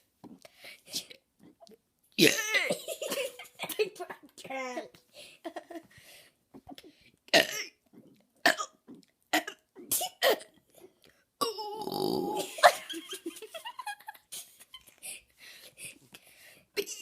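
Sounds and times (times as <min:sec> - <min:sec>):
girl burping: 0:02.2 - 0:03.8, 0:07.3 - 0:07.8, 0:08.4 - 0:10.6, 0:11.4 - 0:12.8.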